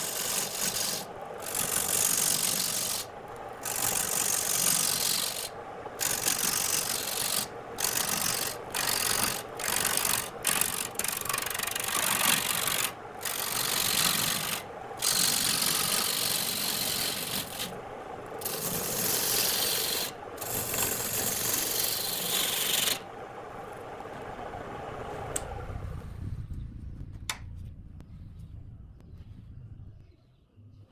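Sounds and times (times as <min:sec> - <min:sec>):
lathe tool scraping wood: 0:00.0 - 0:24.2
lathe motor humming: 0:00.0 - 0:25.9.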